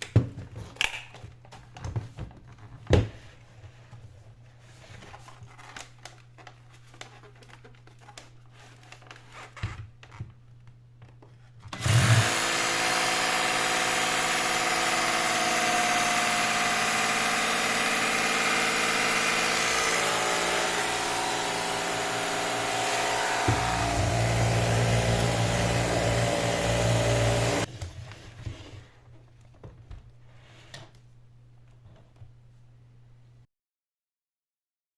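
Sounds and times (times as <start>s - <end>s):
stick vacuum cleaner running: 11.8s - 27.7s.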